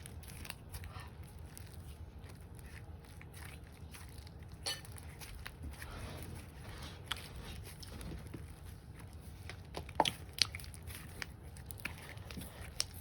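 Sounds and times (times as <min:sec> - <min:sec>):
slime squished by hand: 0:00.0 - 0:13.0.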